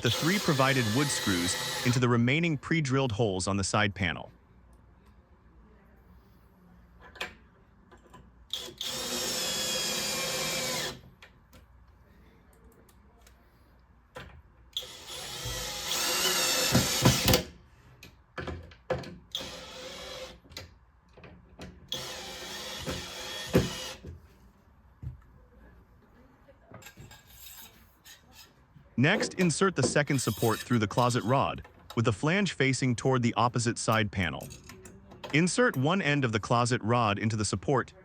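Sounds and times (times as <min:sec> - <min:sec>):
electric drill driving screws: 0:00.0 - 0:02.0, 0:08.5 - 0:11.1, 0:14.8 - 0:17.5, 0:19.3 - 0:20.4, 0:21.9 - 0:24.1.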